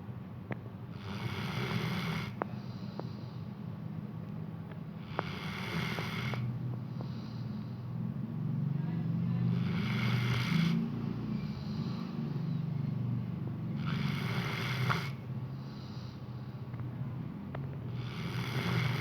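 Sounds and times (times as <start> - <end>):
dog snoring: 0.9 - 3.2, 5.0 - 7.5, 9.4 - 12.4, 13.7 - 16.2, 17.9 - 19.0.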